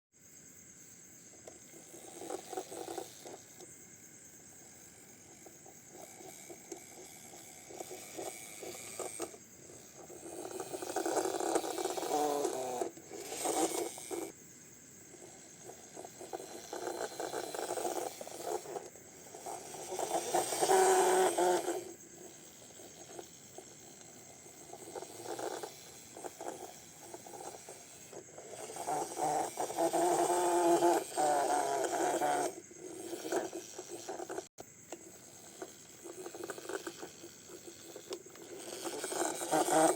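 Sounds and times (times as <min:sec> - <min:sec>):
small hard parts scraping and rattling: 0:01.3 - 0:03.7, 0:04.9 - 0:14.4, 0:15.1 - 0:39.9
small clicks: 0:01.4 - 0:03.8, 0:15.6 - 0:39.9.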